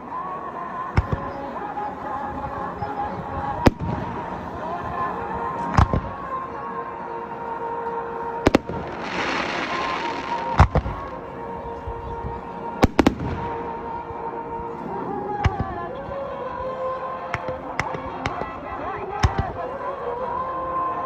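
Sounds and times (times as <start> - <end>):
fireworks bangs: 8.5 - 11.2, 12.8 - 13.7
fireworks hissing crackle: 8.5 - 11.2.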